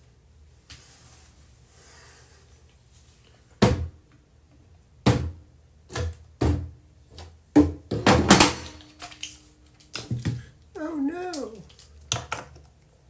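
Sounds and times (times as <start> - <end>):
wooden knocks from cabinet doors: 3.6 - 4.0, 5.0 - 6.8, 7.6 - 8.6.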